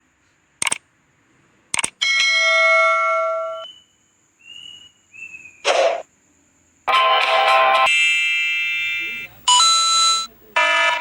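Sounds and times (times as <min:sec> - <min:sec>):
short clicks: 0:00.6 - 0:00.8, 0:01.7 - 0:02.0.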